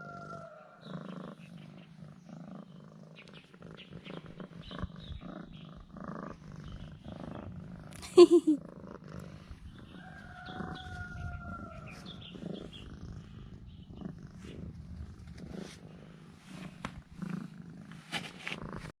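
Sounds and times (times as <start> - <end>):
cat purring: 0.0 - 19.0
soft rustles and clicks: 14.4 - 18.9.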